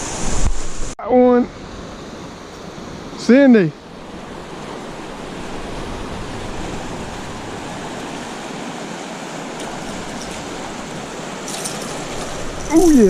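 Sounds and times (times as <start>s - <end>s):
river water rushing over shallows: 1.6s - 13.0s.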